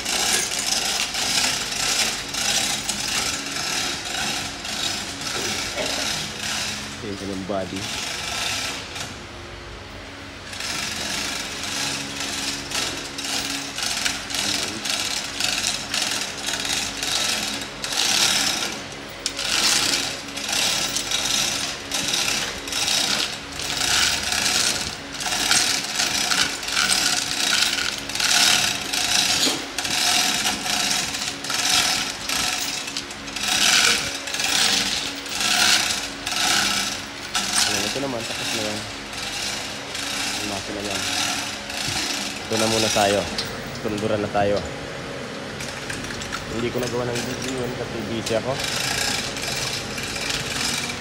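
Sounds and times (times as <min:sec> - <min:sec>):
ratchet wrench rattling clicks: 0:10.6 - 0:44.1.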